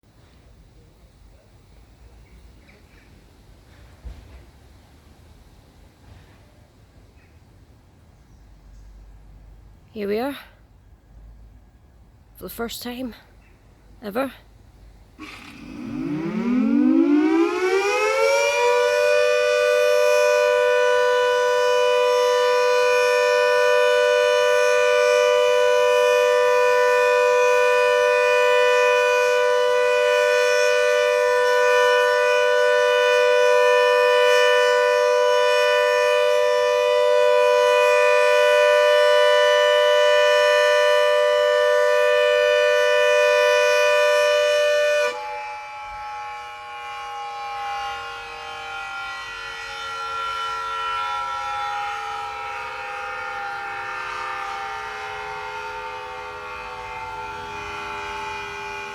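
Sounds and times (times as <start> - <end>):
warning siren wailing: 15.2 - 58.9.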